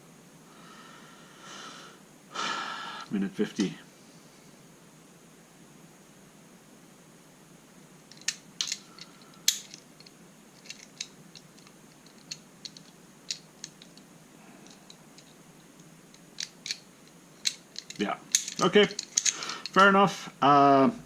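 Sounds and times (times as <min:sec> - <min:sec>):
metal puzzle lock clicking: 0:08.1 - 0:14.0, 0:16.2 - 0:16.8, 0:17.4 - 0:19.8
sharp metal clacks: 0:17.4 - 0:19.9.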